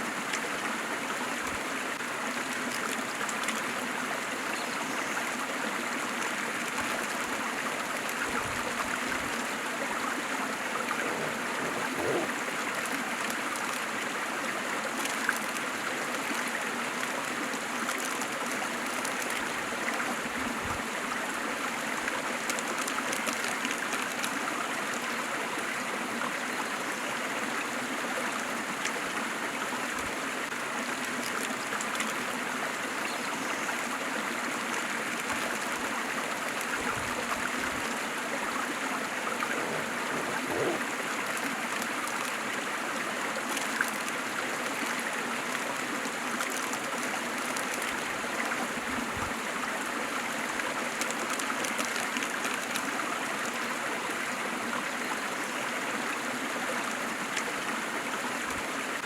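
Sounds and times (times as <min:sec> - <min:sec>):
waterfall rushing: 0:10.6 - 0:12.9, 0:38.5 - 0:41.4.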